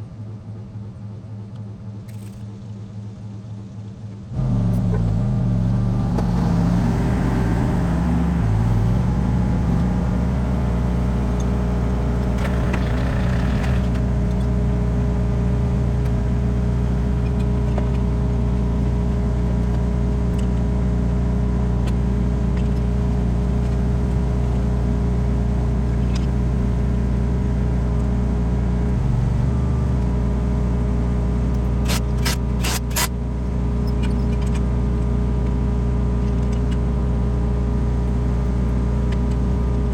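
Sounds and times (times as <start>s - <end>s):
diesel engine idling: 4.3s - 39.9s
quick sharp clicks: 31.8s - 33.1s.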